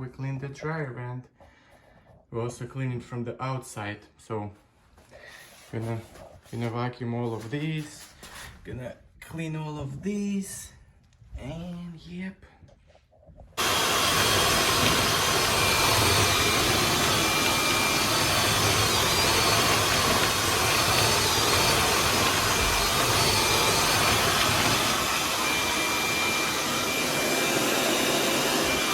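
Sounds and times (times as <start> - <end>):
shop vacuum running: 13.6 - 28.9.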